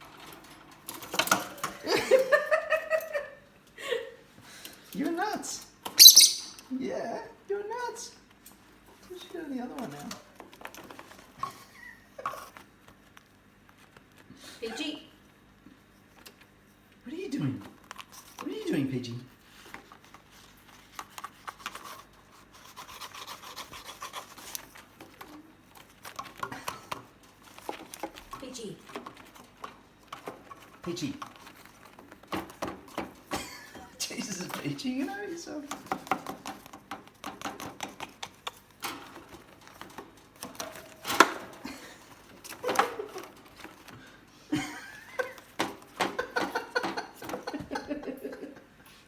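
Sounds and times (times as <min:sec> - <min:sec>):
bird chewing cardboard tube: 0:19.4 - 0:33.4, 0:35.7 - 0:41.4.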